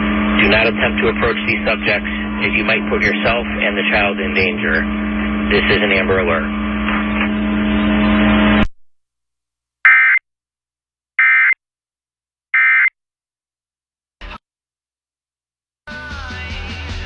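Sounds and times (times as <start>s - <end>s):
radio programme audio: 0.0s - 8.6s, 15.9s - 17.0s
steady hum: 0.0s - 8.6s.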